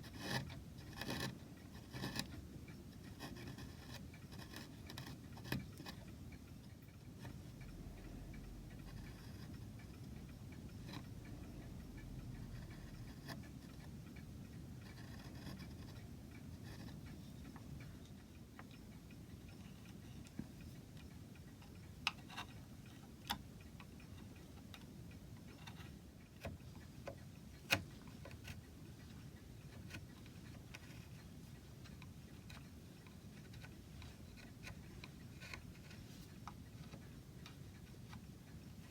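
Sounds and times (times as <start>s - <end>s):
tools and wood clicking: 0.0s - 7.7s, 14.8s - 18.9s, 19.5s - 38.9s
steady low hum: 0.0s - 38.9s.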